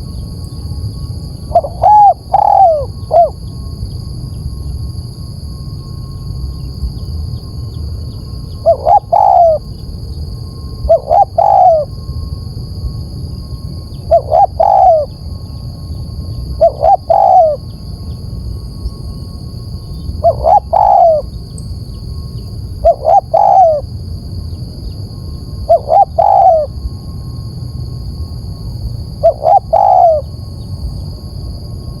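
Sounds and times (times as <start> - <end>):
dove cooing: 1.5 - 3.4, 8.6 - 9.6, 10.8 - 11.9, 14.1 - 15.2, 16.5 - 17.7, 20.2 - 21.3, 22.8 - 23.9, 25.7 - 26.8, 29.2 - 30.3.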